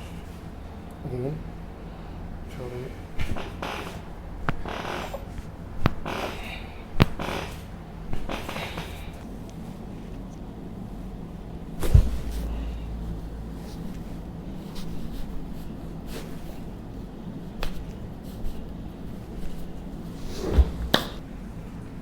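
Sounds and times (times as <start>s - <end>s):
heavy thuds on treatment table: 20.4s - 21.2s.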